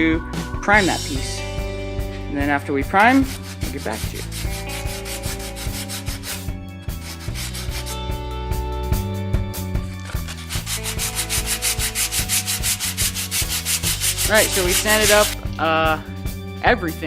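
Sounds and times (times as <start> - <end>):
sandpaper rubbing on wood: 2.9 - 8.0, 10.1 - 15.4.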